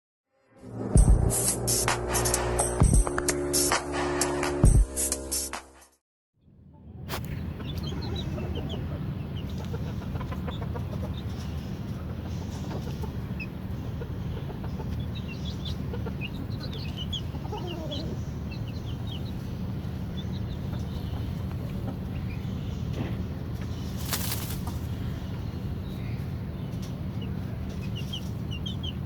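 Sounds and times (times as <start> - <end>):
steady low rumble: 0.6 - 3.8, 6.4 - 29.0
birds chirping: 6.8 - 29.0.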